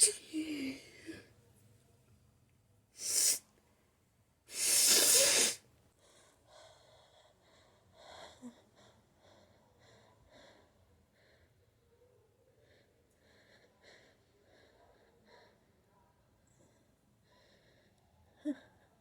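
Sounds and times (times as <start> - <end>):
air bursts through nose: 0.0 - 0.7, 3.0 - 3.4, 4.5 - 5.6
sniffly breaths: 3.0 - 3.4, 4.5 - 11.8.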